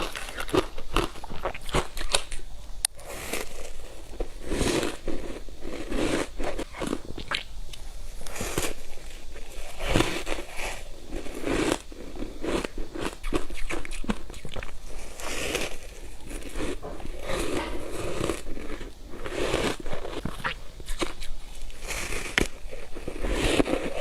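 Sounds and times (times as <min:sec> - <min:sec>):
crunching ice: 0:08.2 - 0:24.0.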